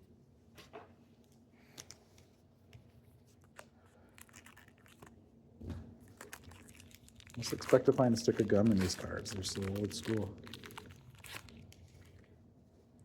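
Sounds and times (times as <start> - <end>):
wrapper rustling and tearing: 6.1 - 12.3.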